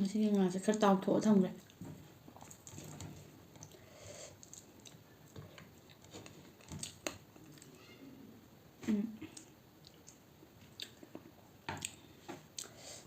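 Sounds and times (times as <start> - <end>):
close-miked chewing: 1.5 - 7.8, 9.3 - 12.8.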